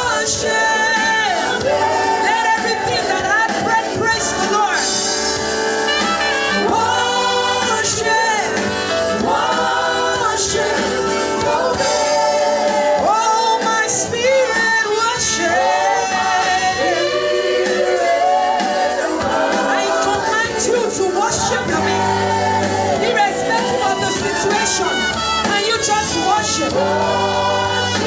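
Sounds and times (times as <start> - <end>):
gospel choir singing: 0.0 - 28.0.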